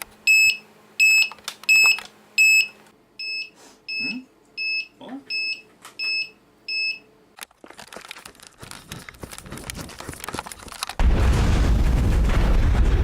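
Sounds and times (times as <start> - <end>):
gas alarm beep: 0.3 - 7.1
crackling and popping: 7.4 - 13.0
explosion rumble: 11.0 - 13.0.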